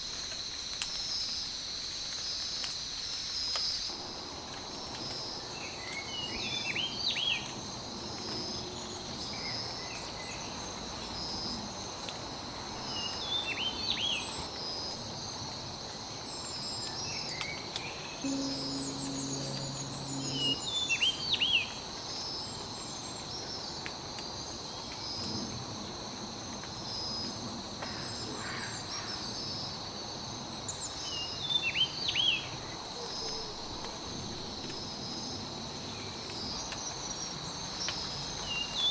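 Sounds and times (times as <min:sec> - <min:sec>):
pulsing cricket chirp: 0:00.0 - 0:27.6
songbird singing: 0:05.4 - 0:07.6, 0:12.8 - 0:14.4, 0:16.2 - 0:21.9, 0:30.8 - 0:33.6
high-pitched insect drone: 0:18.2 - 0:21.9.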